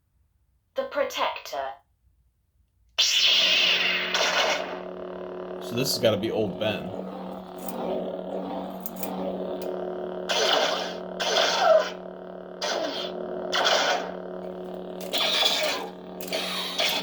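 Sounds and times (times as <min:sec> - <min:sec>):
lightsaber electric hum: 0:03.4 - 0:17.0.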